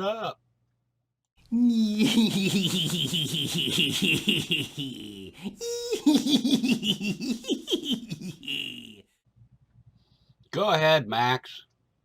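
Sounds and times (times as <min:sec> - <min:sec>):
person laughing: 0:01.5 - 0:09.0.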